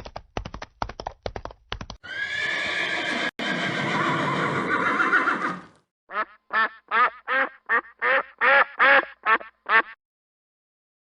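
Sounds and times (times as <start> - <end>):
duck quacking: 6.1 - 10.0.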